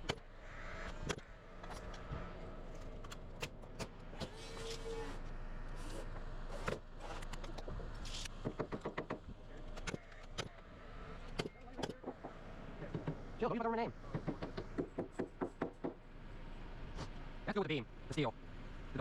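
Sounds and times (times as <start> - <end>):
knocks and clicks on lumber: 8.4 - 10.5, 11.4 - 13.2, 14.1 - 16.0.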